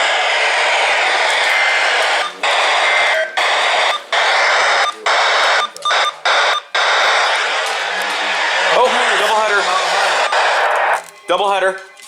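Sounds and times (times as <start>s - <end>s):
radio static hiss: 0.0s - 11.1s.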